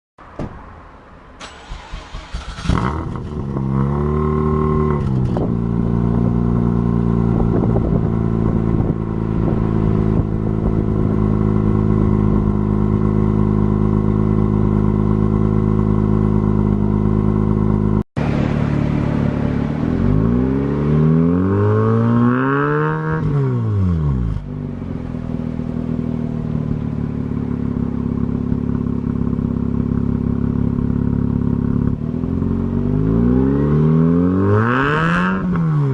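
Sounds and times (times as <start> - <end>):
rotary engine idling and revving: 1.4 - 35.9.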